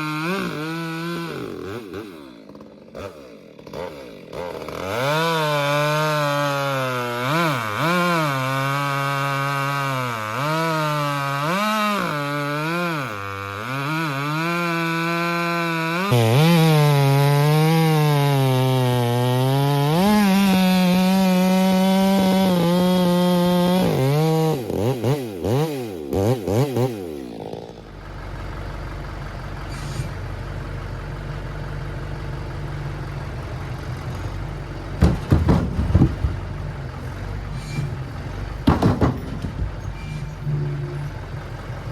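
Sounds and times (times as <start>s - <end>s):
chainsaw cutting wood: 0.0s - 28.3s, 33.4s - 36.5s, 37.5s - 41.1s
low steady engine hum: 27.8s - 41.9s.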